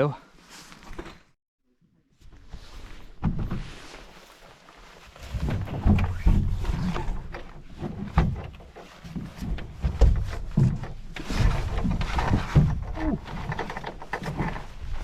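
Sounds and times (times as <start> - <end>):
canoe knocks and thumps: 5.3 - 14.8.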